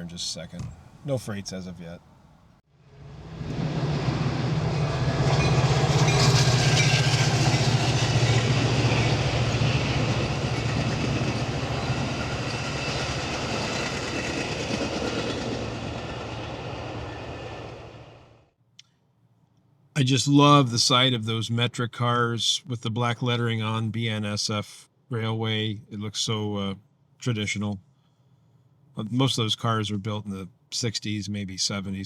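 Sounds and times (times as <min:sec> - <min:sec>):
low train engine hum: 0:00.0 - 0:18.5
train wheels on rails: 0:03.2 - 0:18.3.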